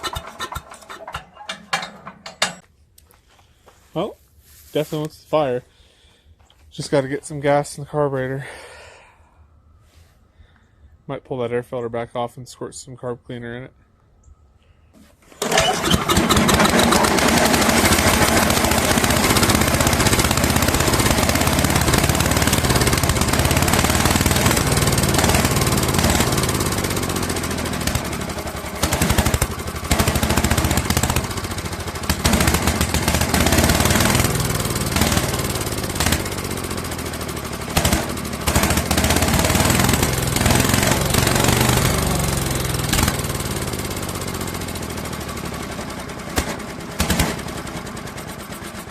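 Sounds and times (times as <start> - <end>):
small gasoline engine running unevenly: 0.0 - 2.6, 15.4 - 48.9.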